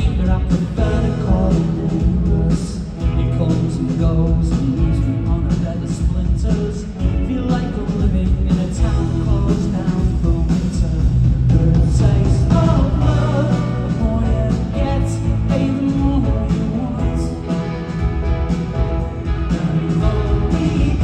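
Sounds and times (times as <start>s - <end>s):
person singing: 0.0s - 18.0s, 19.5s - 21.0s
live pop-rock band: 0.0s - 21.0s.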